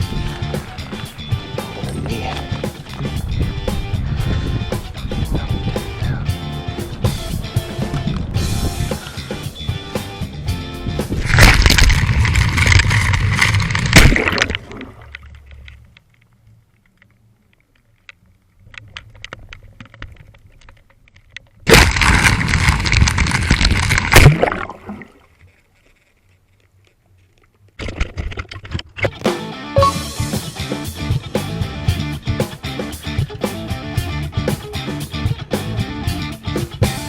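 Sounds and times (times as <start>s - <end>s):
underwater rushing and scraping: 0.0s - 6.1s, 11.0s - 16.2s, 18.6s - 26.2s
faint crackles: 11.2s - 29.1s.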